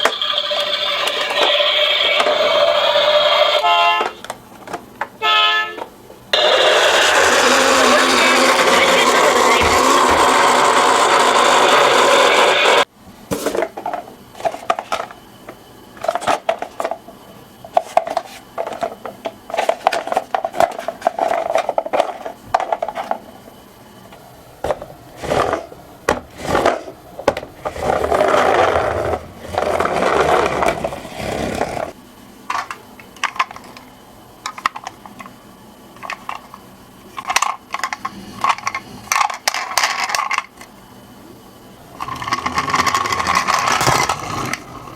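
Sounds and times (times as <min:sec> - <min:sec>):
loud continuous noise: 0:02.2 - 0:15.2
toy cars clattering down a slope: 0:42.0 - 0:44.6.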